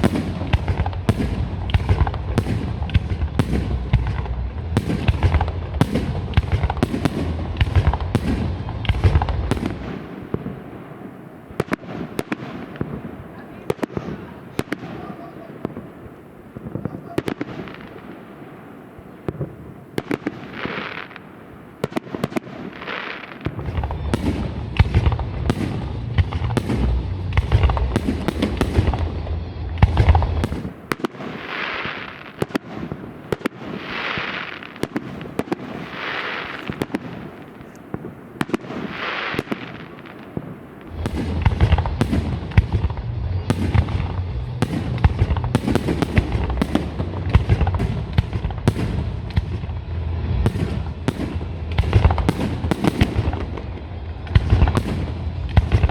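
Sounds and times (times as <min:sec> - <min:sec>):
deep rumble: 0:00.0 - 0:09.9, 0:23.6 - 0:30.8, 0:40.9 - 0:55.9
firework bangs: 0:00.0 - 0:55.9
hissing crackling fireworks: 0:00.0 - 0:55.9.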